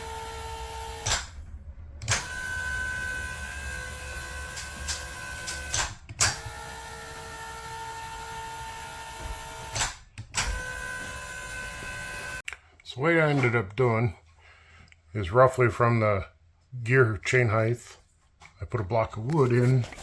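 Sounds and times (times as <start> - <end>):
motor and chain drive whine: 0.0 - 1.4, 2.0 - 12.4.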